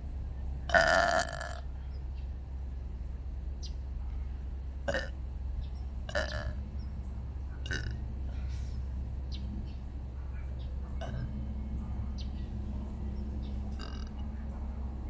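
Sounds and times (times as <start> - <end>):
person burping: 0.7 - 1.6, 4.9 - 5.1, 7.7 - 8.0.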